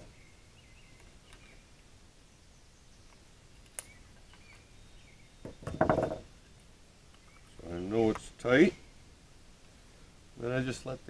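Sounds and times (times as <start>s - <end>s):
faint bird chirps: 0.0s - 5.8s, 7.1s - 7.9s.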